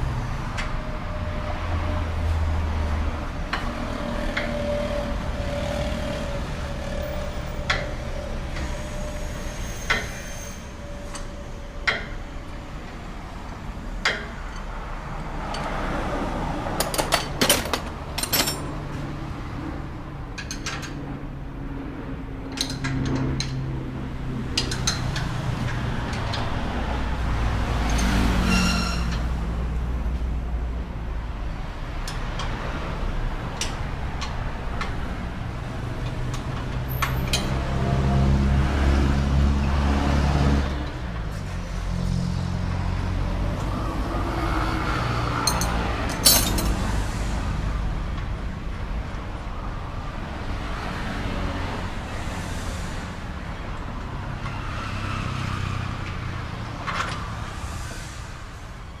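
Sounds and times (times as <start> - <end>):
hand tools clinking on metal: 16.8 - 18.7, 45.4 - 46.8.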